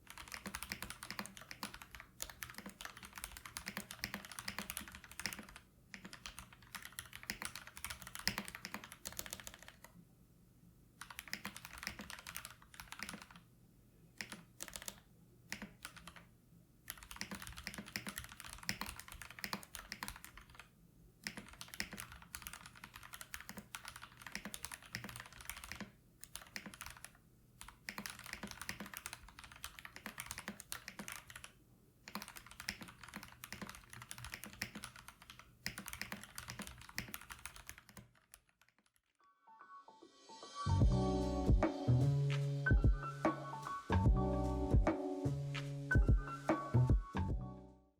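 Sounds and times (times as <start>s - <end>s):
mechanical keyboard typing: 0.1s - 10.0s, 11.0s - 13.4s, 14.2s - 16.3s, 16.9s - 39.2s.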